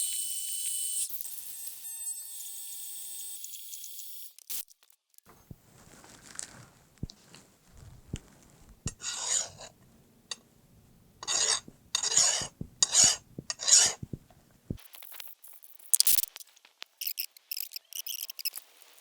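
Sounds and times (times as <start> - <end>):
light clicks and taps: 5.3 - 14.8
short rasping strokes: 5.4 - 14.8.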